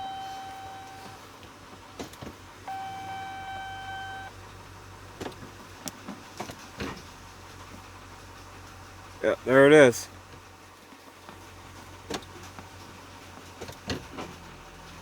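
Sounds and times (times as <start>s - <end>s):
electronic warning chime: 0.0s - 1.2s, 2.7s - 4.3s.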